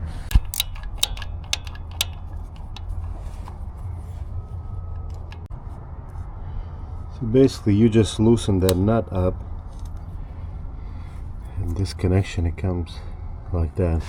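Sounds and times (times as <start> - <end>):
hand tool metallic clicks: 0.0 - 3.6
steady low hum: 0.0 - 14.0.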